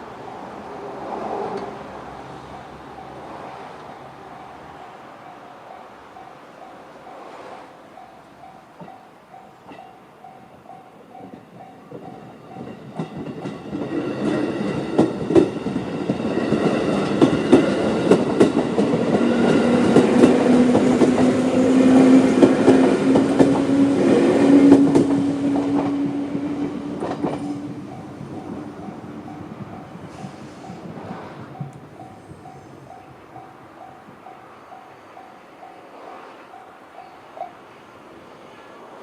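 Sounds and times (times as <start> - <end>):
train wheels clacking over rail joints: 11.2 - 33.5.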